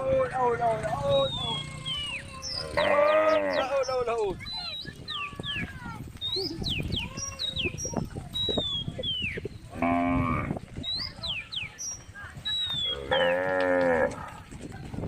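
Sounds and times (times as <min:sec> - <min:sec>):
cow mooing: 0:02.7 - 0:03.7, 0:09.8 - 0:10.5, 0:12.9 - 0:14.3.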